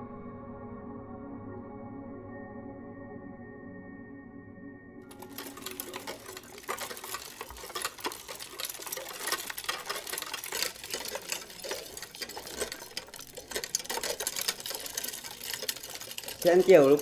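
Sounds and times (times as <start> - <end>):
small machine clattering: 5.1 - 17.0.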